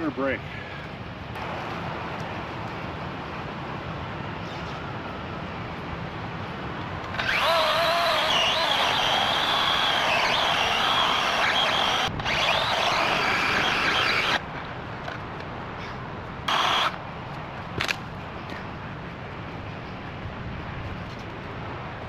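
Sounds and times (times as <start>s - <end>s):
electric chainsaw cutting log: 7.1s - 14.4s, 16.5s - 17.0s.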